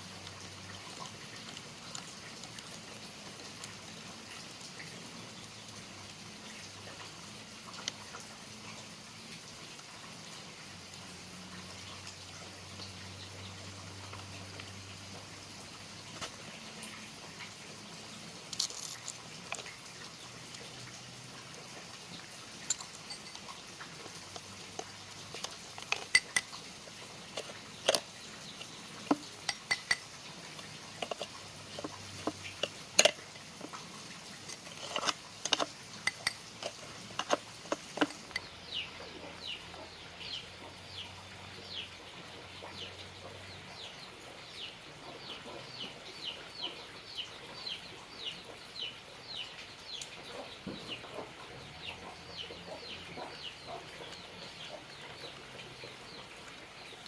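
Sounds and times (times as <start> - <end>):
hard objects clinking: 18.6 - 19.7, 22.6 - 26.7, 27.3 - 38.5.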